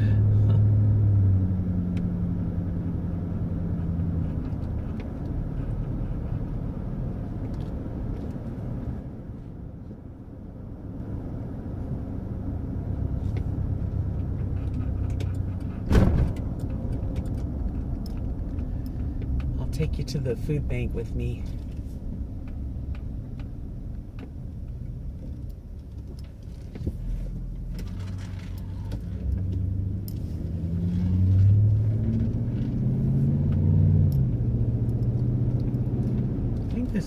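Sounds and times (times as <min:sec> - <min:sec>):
engine hum: 0:00.0 - 0:37.0
road noise rumble: 0:00.0 - 0:37.0
sharp thump: 0:15.9 - 0:16.4.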